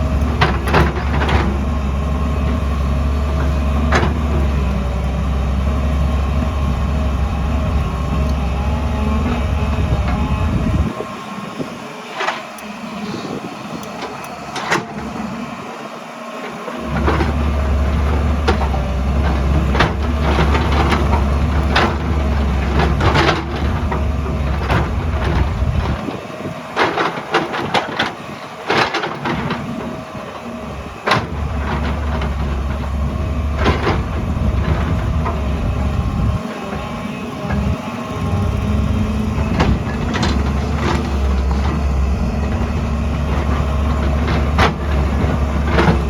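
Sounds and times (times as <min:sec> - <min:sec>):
excavator diesel engine drone: 0:00.0 - 0:46.0.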